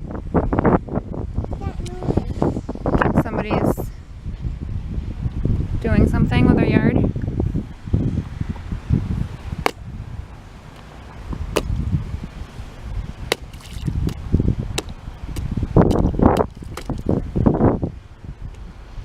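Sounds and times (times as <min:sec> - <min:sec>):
low rumbling: 0:00.0 - 0:19.0.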